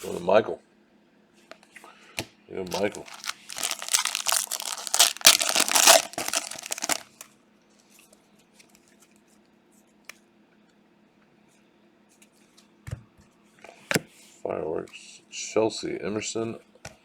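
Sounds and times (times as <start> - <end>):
plastic wrapper tearing and crinkling: 2.7 - 7.2.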